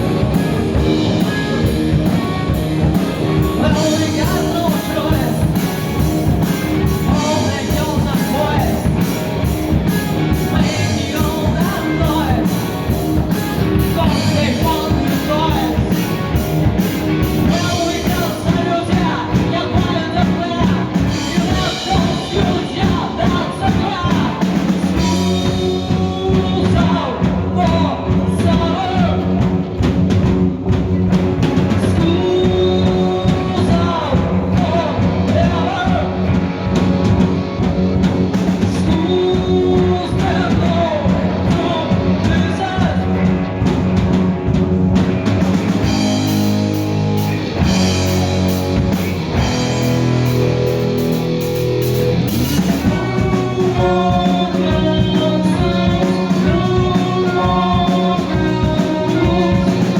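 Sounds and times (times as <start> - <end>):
person singing: 0.0 - 9.2, 9.9 - 29.4, 31.7 - 36.5, 38.6 - 43.4, 52.5 - 59.9
rock band playing: 0.0 - 59.9.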